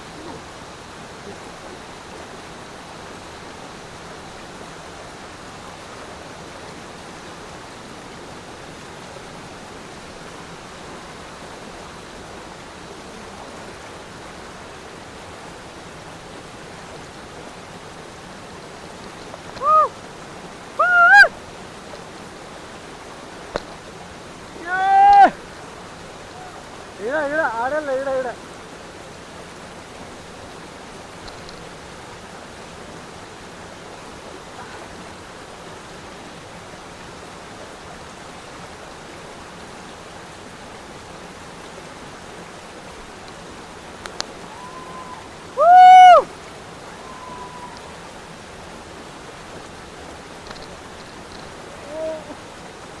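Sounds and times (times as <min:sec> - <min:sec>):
waterfall rushing: 0:00.0 - 0:53.0
loud rising and falling calls: 0:19.6 - 0:19.9, 0:20.8 - 0:21.4.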